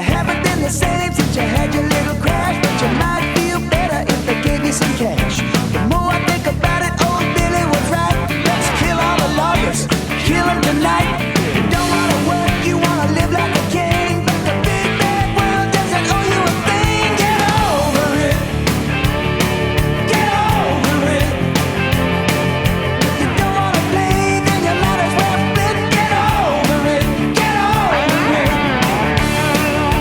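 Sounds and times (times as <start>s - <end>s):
person singing: 0.0s - 18.7s, 20.0s - 21.6s, 23.0s - 30.0s
drums: 0.0s - 30.0s
guitar: 0.0s - 30.0s.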